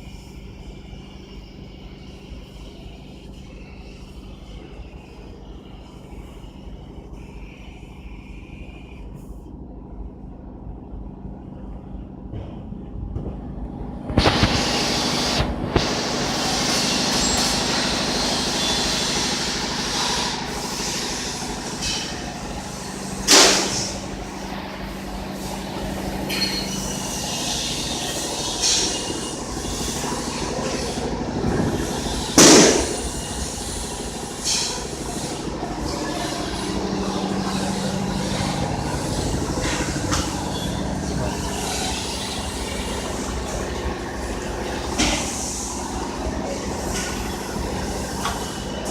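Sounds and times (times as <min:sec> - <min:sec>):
low machine hum: 0:00.0 - 0:48.9
laser cutting hiss: 0:14.2 - 0:31.1, 0:31.8 - 0:48.7.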